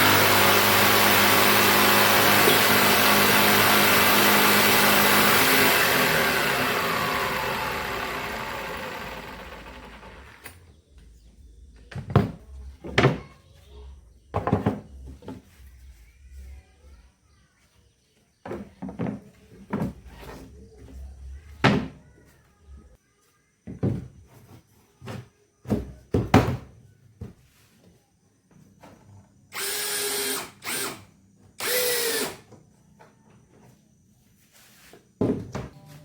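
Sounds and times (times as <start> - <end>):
power drill running: 0.0 - 10.6, 29.5 - 32.4
knocks and clatter of wood and tools: 11.8 - 13.4, 14.3 - 15.6, 18.4 - 22.0, 23.6 - 29.1, 34.9 - 35.9.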